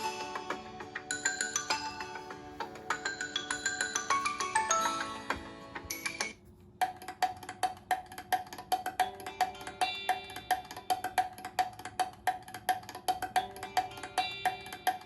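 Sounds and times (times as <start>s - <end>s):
held melodic notes: 0.0s - 6.3s
wood-block tapping ringtone: 1.0s - 15.0s.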